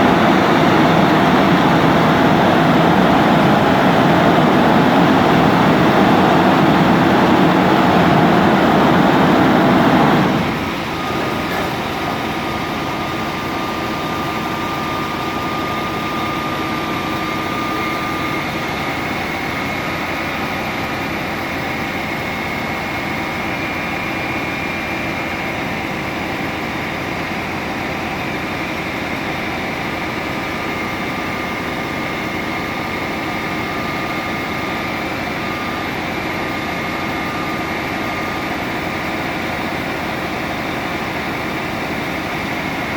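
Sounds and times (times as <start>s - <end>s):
thin high whine: 0.0s - 24.8s
heavy engine running: 0.0s - 42.9s.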